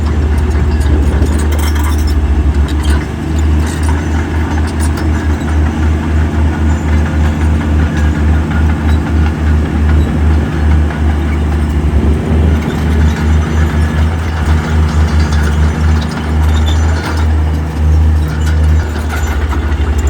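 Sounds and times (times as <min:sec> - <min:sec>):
heavy diesel engine throbbing: 0:00.0 - 0:20.0
metallic clanks: 0:00.0 - 0:20.0.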